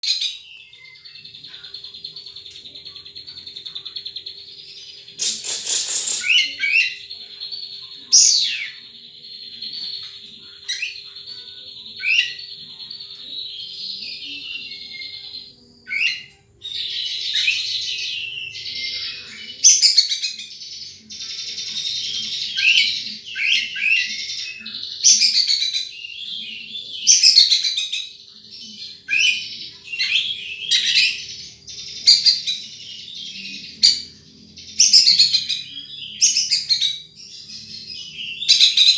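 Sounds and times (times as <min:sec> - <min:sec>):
bird singing high trill: 0:04.5 - 0:09.0.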